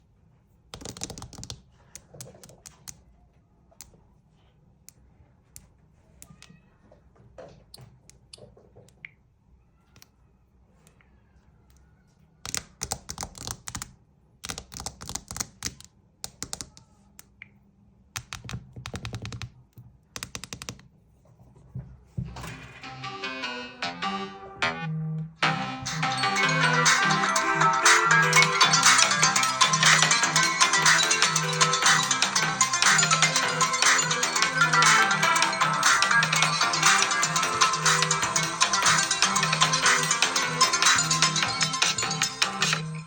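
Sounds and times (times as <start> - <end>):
keyboard typing clicks: 0.7 - 3.0, 12.4 - 17.6, 18.2 - 19.5, 20.2 - 20.9.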